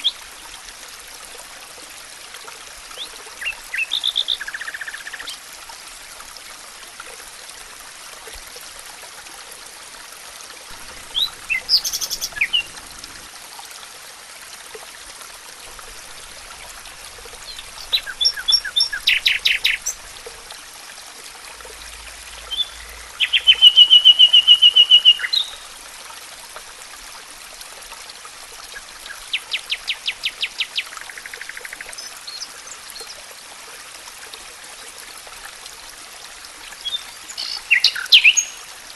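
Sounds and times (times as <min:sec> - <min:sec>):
stream rushing: 0:03.4 - 0:29.4
songbirds singing: 0:10.8 - 0:12.8, 0:17.4 - 0:20.0, 0:22.4 - 0:25.6, 0:36.8 - 0:38.7
bird trill: 0:11.1 - 0:12.8.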